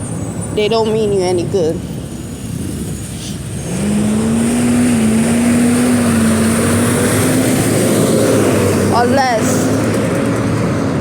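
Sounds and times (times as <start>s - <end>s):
car engine hum: 0.0s - 11.0s
road noise: 0.0s - 11.0s.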